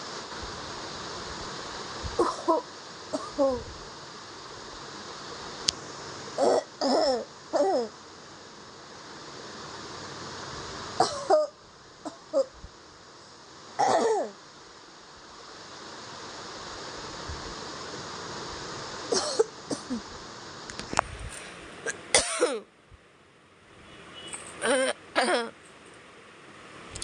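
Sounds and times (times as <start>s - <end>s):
steady hiss: 0.0s - 27.0s
person coughing: 11.0s - 11.4s, 13.8s - 14.3s, 19.1s - 20.0s, 22.2s - 22.7s, 24.6s - 25.5s.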